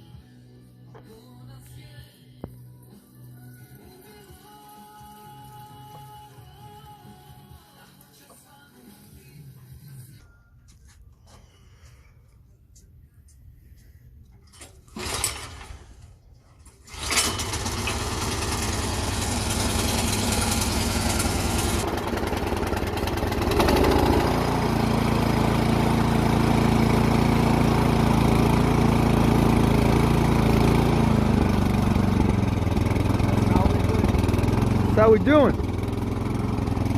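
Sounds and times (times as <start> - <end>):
snowblower engine starting and running: 3.7 - 7.4, 14.5 - 36.9.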